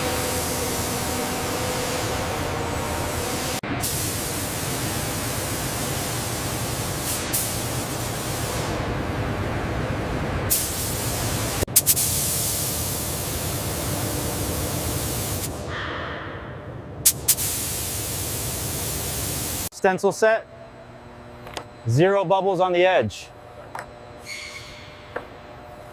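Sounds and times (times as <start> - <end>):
paint spray gun hissing: 10.5 - 13.7, 14.3 - 15.6, 17.1 - 19.7.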